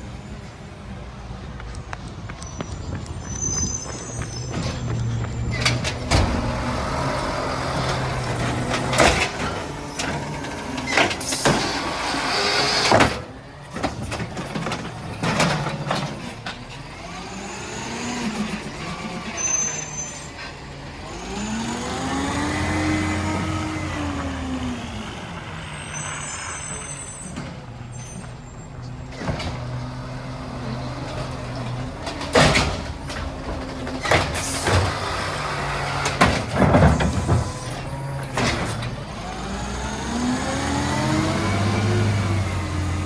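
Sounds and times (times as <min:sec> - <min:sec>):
garbage truck engine revving: 0:03.3 - 0:28.0, 0:28.7 - 0:43.0.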